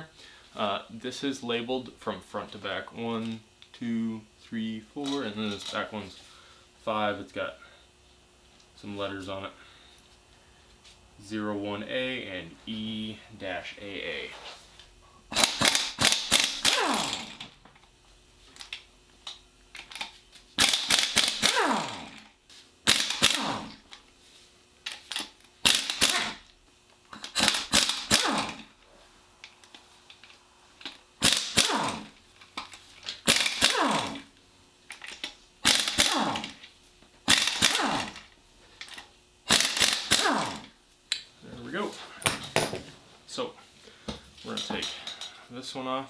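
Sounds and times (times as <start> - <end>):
ratchet wrench clicking: 15.4 - 17.4, 18.6 - 22.3, 22.9 - 23.8, 24.8 - 26.4, 27.1 - 28.8, 29.4 - 34.2, 34.9 - 36.7, 37.3 - 40.7.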